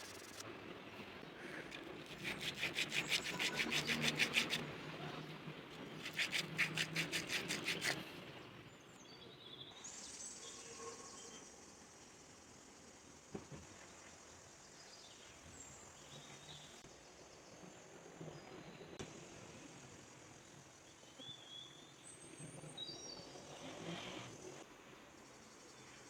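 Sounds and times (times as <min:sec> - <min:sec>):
sanding wooden spoon: 0:00.0 - 0:00.4, 0:01.7 - 0:04.7, 0:05.8 - 0:08.0.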